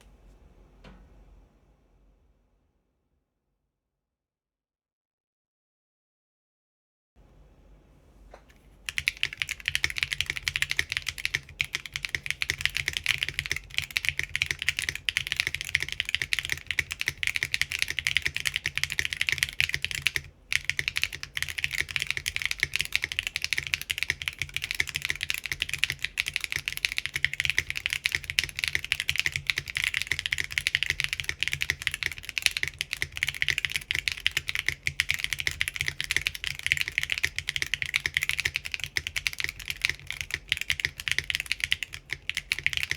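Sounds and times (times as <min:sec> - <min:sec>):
fast typing on mechanical keyboard: 0:08.9 - 0:42.9.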